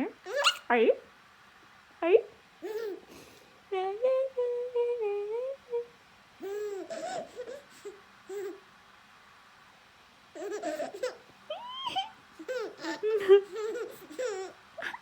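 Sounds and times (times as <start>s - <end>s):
infant vocalizing: 2.6s - 3.1s, 6.4s - 8.6s, 10.4s - 15.0s.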